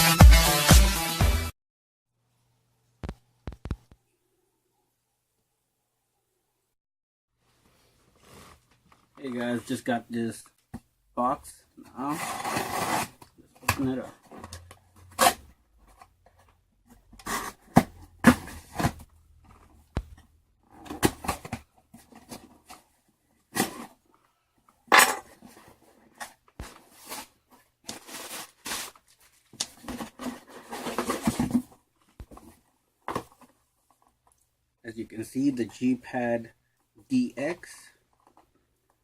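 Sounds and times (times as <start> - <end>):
packaging rustling and scraping: 12.0 - 19.8, 24.9 - 33.6.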